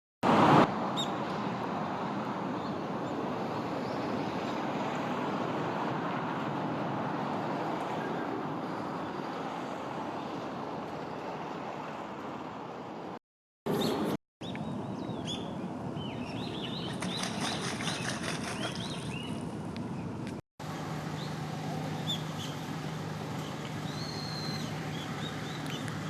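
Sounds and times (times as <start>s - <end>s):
rushing outdoor ambient noise: 0.2s - 26.0s.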